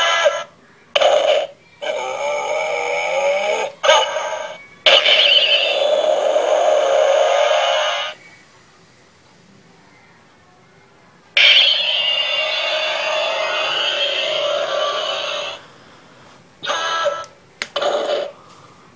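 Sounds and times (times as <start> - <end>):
electronic toy sound effects: 0.0 - 8.2, 11.4 - 15.6, 16.6 - 18.4.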